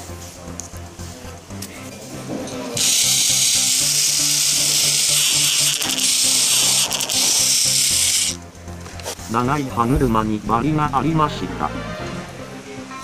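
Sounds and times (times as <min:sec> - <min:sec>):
toy train motor whirring: 0:02.8 - 0:08.4.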